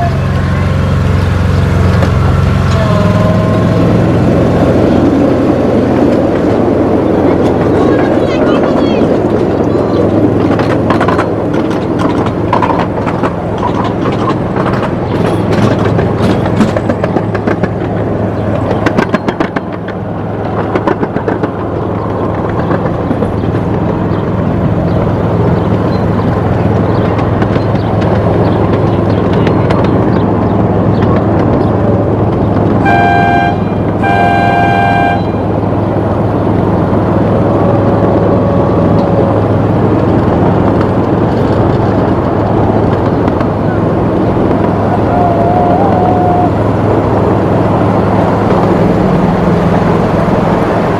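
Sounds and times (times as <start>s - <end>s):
miniature train humming and rumbling: 0.0s - 50.9s
wheels clicking over rail joints: 0.0s - 50.9s
train horn toots: 32.8s - 35.6s.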